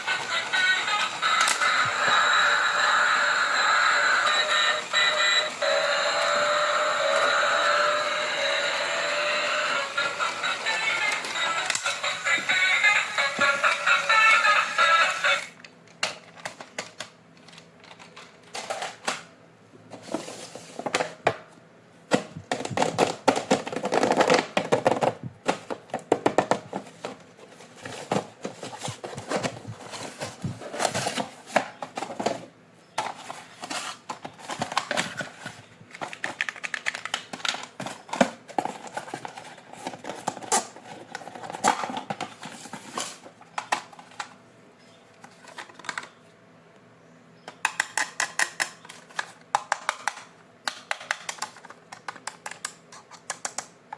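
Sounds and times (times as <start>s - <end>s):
hands handling plastic toy parts: 22.5s - 44.4s, 45.2s - 46.2s, 47.6s - 53.7s.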